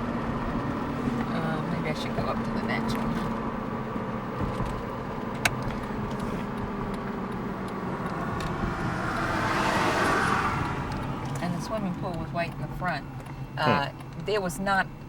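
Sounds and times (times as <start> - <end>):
road and engine noise inside car: 0.0 - 15.0.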